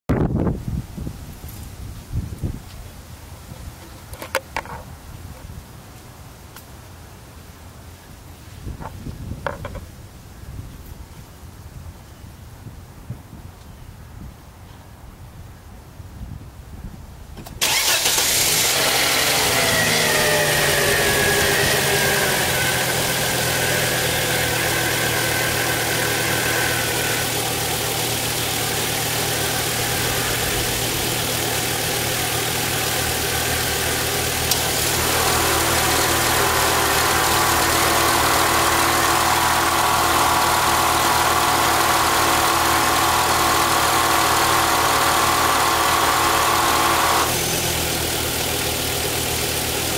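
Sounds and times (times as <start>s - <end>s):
car engine starting and idling: 17.4s - 49.9s.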